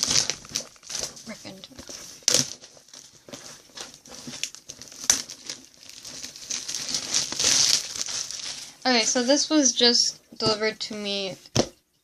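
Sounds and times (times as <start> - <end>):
plastic wrapping crinkling and ripping: 0.0 - 9.5.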